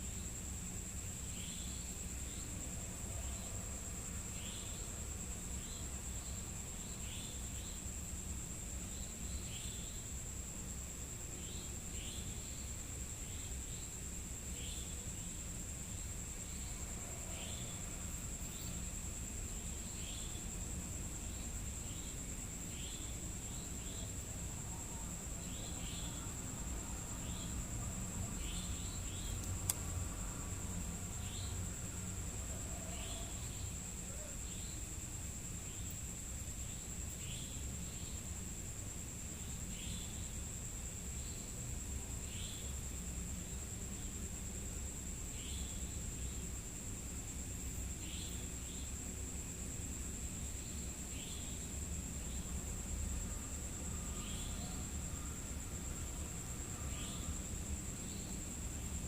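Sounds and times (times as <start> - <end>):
crickets trilling: 0.0 - 59.0
short insect chirps: 0.0 - 59.0.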